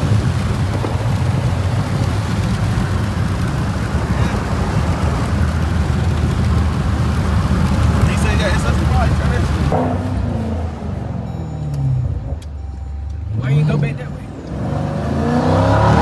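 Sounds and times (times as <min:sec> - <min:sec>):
car engine rumbling: 0:00.0 - 0:16.0.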